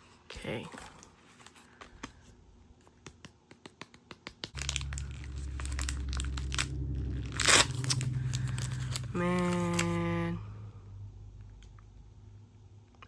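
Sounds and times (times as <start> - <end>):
low steady hum: 4.5 - 13.0
packaging ripping: 4.6 - 10.0
plastic packaging crinkling: 4.6 - 10.0.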